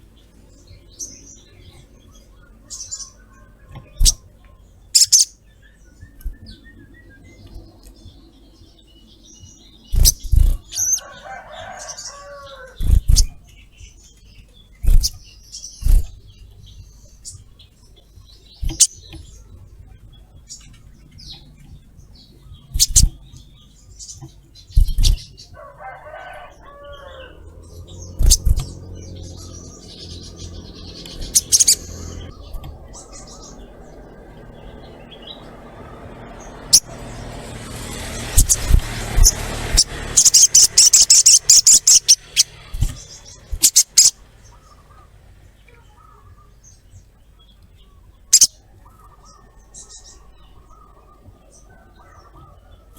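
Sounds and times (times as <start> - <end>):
bird chirping high and thin: 2.5 - 4.3, 4.9 - 7.6, 8.9 - 11.0, 22.2 - 25.4, 27.0 - 45.1
fluttering wing-beats and knocks: 9.9 - 16.6, 18.5 - 21.9, 22.6 - 26.4, 28.0 - 44.8.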